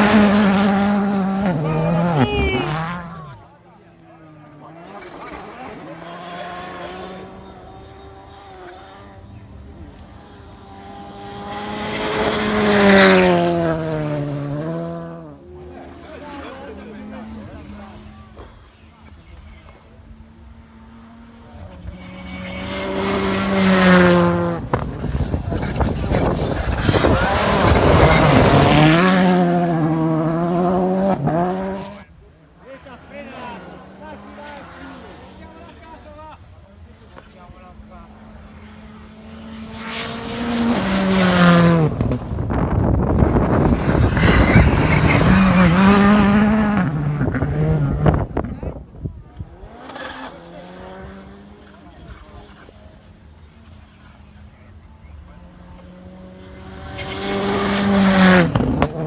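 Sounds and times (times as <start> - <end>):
tyre noise: 0.0 - 3.5, 17.5 - 32.1, 37.1 - 52.8, 55.4 - 59.0
rally car engine passing: 0.0 - 59.0.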